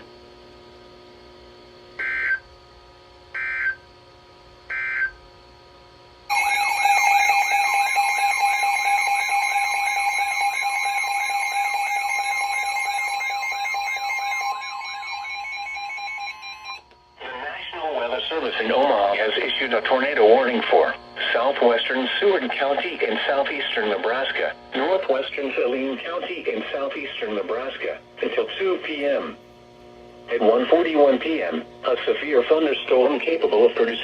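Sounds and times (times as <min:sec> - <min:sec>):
data tone bursts: 0:06.3 - 0:17.8
steady attention tone: 0:06.3 - 0:29.3.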